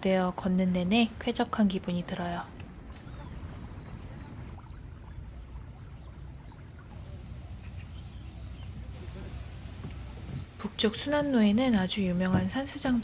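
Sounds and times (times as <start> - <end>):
crickets trilling: 0.0 - 13.0
low steady rumble: 4.4 - 13.0.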